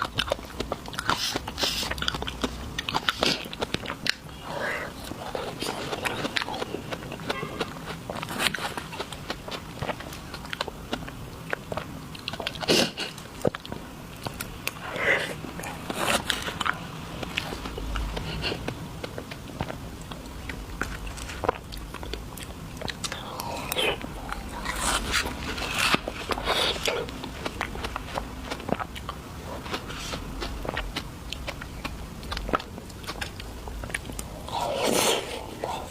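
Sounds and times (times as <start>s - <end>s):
chewing with mouth clicks: 0.0s - 35.9s.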